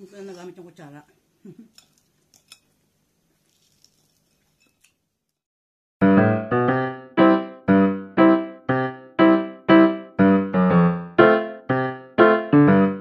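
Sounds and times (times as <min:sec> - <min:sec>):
piano chords: 0:06.0 - 0:13.0.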